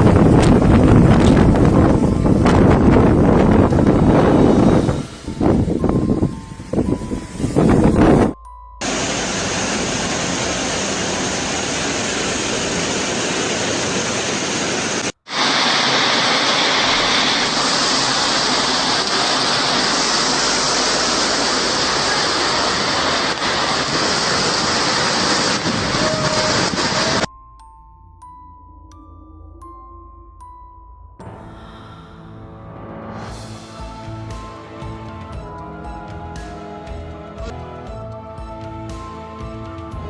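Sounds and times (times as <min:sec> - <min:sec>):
rushing water in storm: 0:08.8 - 0:27.3.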